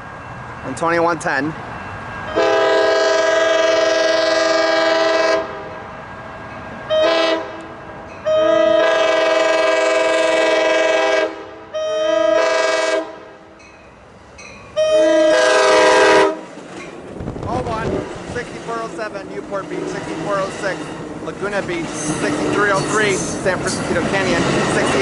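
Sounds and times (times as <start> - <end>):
train noise: 0.0 - 25.0
train horn blasts: 2.3 - 5.6, 6.9 - 13.4, 14.8 - 16.5.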